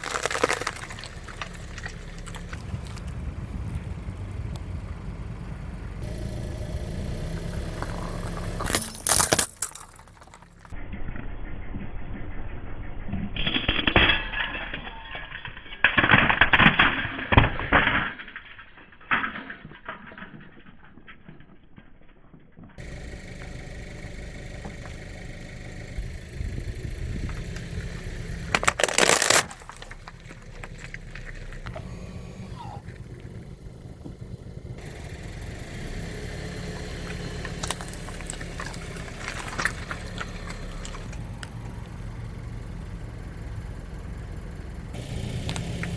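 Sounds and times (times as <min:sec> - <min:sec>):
car engine running: 0:00.0 - 0:10.8, 0:22.8 - 0:45.9
ornaments crunching under car tyres: 0:00.0 - 0:10.8, 0:22.8 - 0:45.9.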